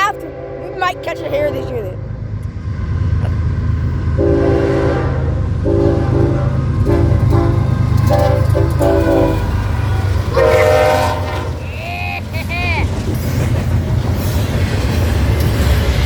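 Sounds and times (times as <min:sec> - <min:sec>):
train rumbling past: 0:00.0 - 0:16.0
locomotive air horn: 0:04.2 - 0:11.7.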